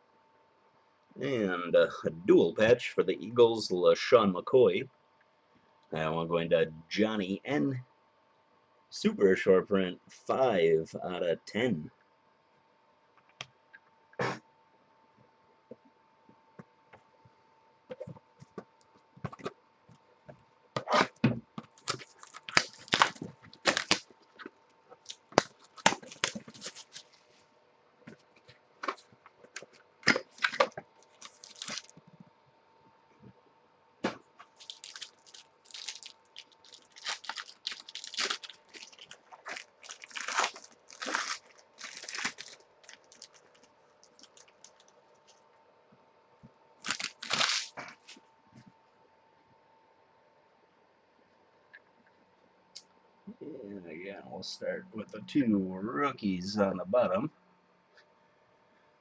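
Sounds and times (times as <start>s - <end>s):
faint steady hum: 0.0s - 59.0s
plastic wrappers tearing and crinkling: 21.7s - 27.2s, 29.6s - 32.0s, 34.4s - 45.3s, 46.8s - 48.0s.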